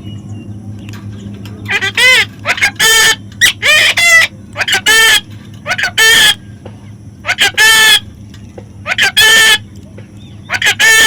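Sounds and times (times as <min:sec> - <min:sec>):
parrot squawking: 0:01.7 - 0:06.4, 0:07.2 - 0:08.1, 0:08.8 - 0:09.7, 0:10.5 - 0:11.0.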